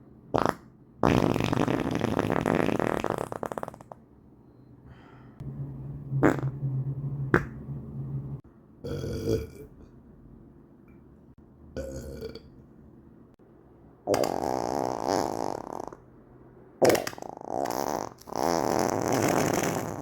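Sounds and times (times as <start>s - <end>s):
farts: 0.3s - 4.0s, 6.2s - 6.5s, 14.1s - 16.0s, 16.8s - 20.0s
burps: 0.4s - 4.0s, 8.8s - 9.8s, 11.8s - 12.5s, 14.1s - 16.0s, 16.8s - 20.0s.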